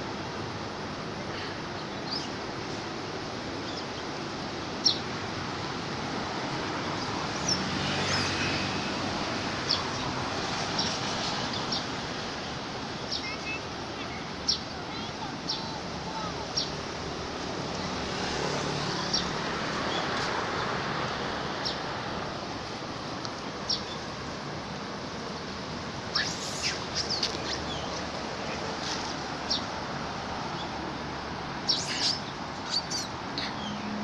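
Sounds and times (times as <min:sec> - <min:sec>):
steady background hiss: 0:00.0 - 0:34.0
high chirping animal calls: 0:26.1 - 0:28.7, 0:31.7 - 0:33.9.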